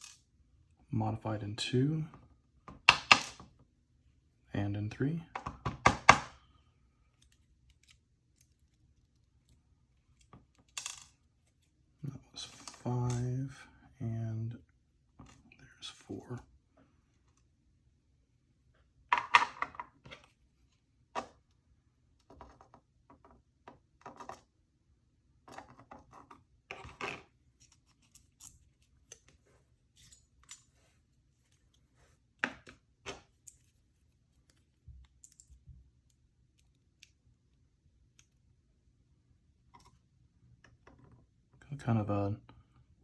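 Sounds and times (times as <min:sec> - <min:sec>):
small metal clicks and rattles: 0:34.4 - 0:37.1.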